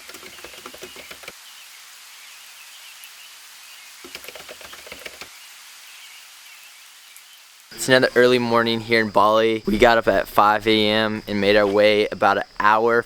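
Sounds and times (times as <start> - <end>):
faint chirping: 0.1 - 13.0
steady high hiss: 1.0 - 13.0.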